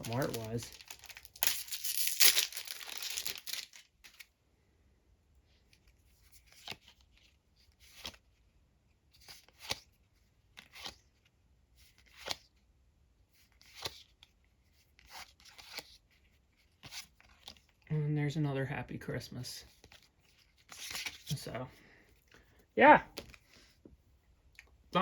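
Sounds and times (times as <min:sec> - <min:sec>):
foil pack tearing open: 0:00.0 - 0:03.9.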